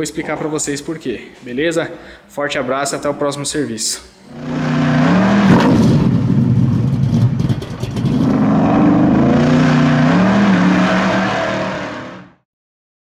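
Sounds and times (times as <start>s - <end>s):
car engine revving: 4.3s - 12.4s.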